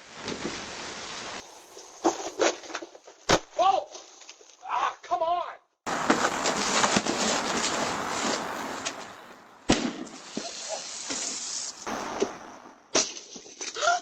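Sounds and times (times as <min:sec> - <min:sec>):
spraying hiss with crackling: 0:00.0 - 0:04.6, 0:05.9 - 0:13.8
sharp bang: 0:09.6 - 0:13.3.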